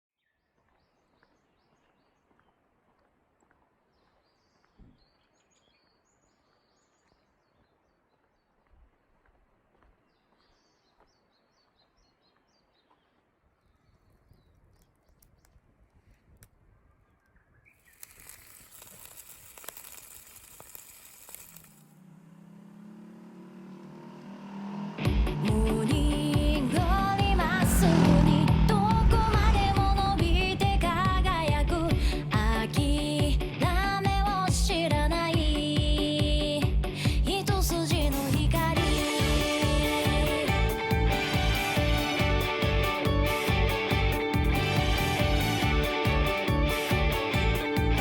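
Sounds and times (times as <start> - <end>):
small birds chirping: 16.6 - 20.4
even hiss: 17.9 - 21.9
low outdoor rumble: 23.7 - 48.0
steady low hum: 25.1 - 33.5.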